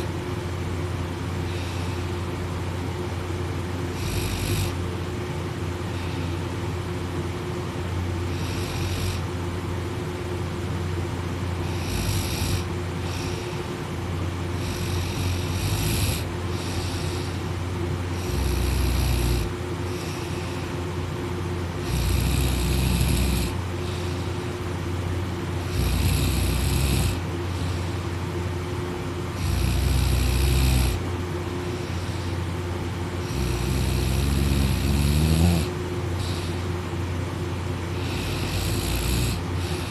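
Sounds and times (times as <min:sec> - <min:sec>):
steady low hum: 0:00.0 - 0:39.9
person snoring: 0:01.4 - 0:02.4, 0:03.9 - 0:04.8, 0:08.3 - 0:09.3, 0:11.6 - 0:13.7, 0:14.5 - 0:17.5, 0:18.1 - 0:20.8, 0:21.8 - 0:24.4, 0:25.6 - 0:28.1, 0:29.3 - 0:31.1, 0:33.2 - 0:36.8, 0:37.9 - 0:39.9.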